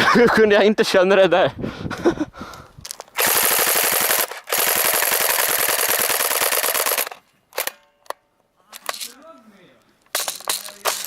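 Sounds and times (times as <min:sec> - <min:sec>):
airsoft gun firing bursts: 0:03.2 - 0:07.8.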